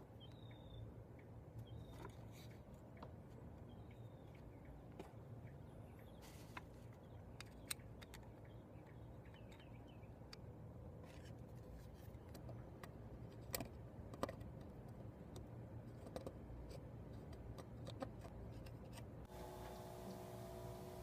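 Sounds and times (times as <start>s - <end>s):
faint bird chirps: 0.1s - 2.5s, 3.6s - 4.8s.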